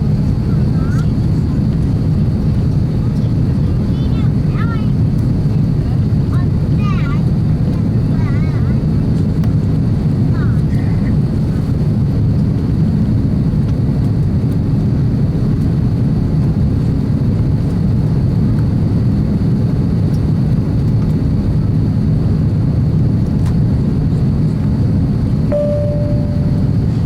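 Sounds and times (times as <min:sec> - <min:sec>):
jet engine cabin rumble: 0:00.0 - 0:27.0
faint high whine: 0:25.5 - 0:27.0.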